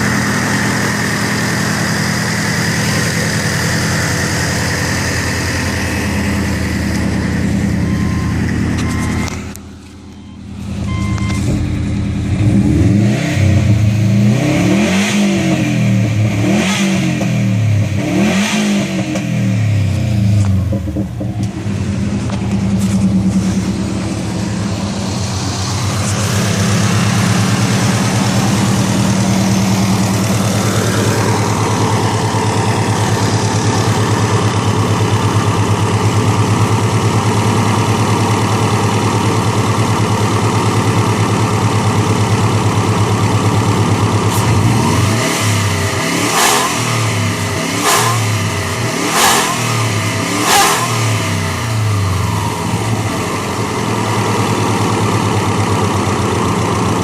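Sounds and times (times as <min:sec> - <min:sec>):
turbo whining: 0:00.0 - 0:14.5
car engine pulling: 0:00.0 - 0:57.0.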